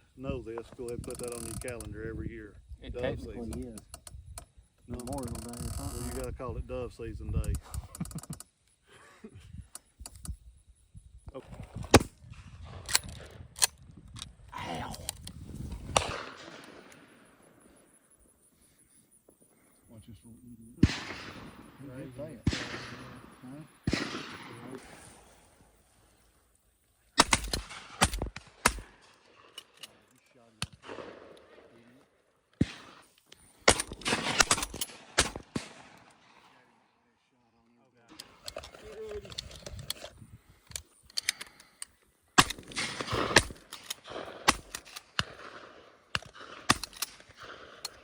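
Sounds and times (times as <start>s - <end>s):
faint distant gunshot pops: 15.8s - 17.1s, 20.8s - 21.8s, 22.4s - 24.8s
shotgun shots: 15.8s - 17.4s, 20.8s - 25.4s, 27.2s - 29.6s, 30.6s - 31.7s, 32.6s - 36.5s, 42.4s - 48.0s.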